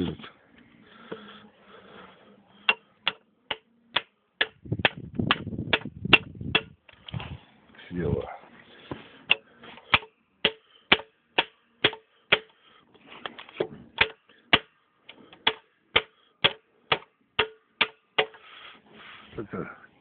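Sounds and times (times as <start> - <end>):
sharp knocks: 2.7 - 6.8.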